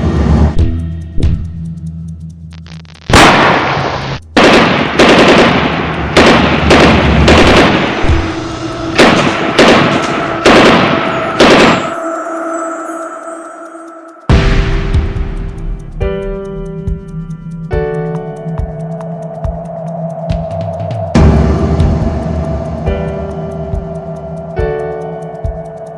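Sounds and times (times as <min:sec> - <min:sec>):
gunshots with ringing tail: 0:03.1 - 0:12.0.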